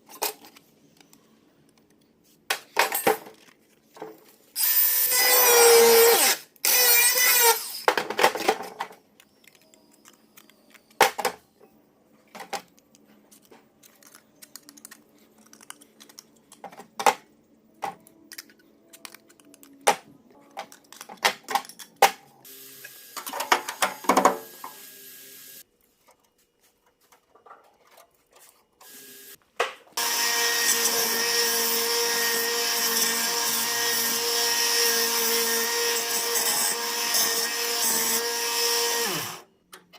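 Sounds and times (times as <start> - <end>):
electric power tool running: 30.0 - 39.4.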